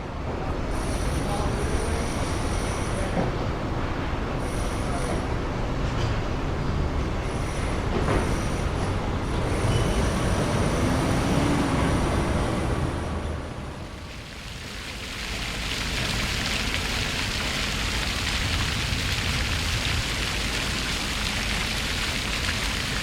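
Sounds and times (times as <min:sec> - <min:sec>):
vehicle rumble in motion: 0:05.2 - 0:23.0.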